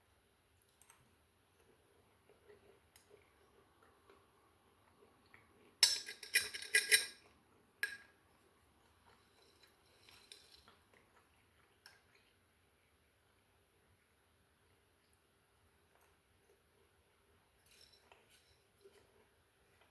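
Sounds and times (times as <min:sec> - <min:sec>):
spoon scraping in jar of oats: 0:05.8 - 0:07.2.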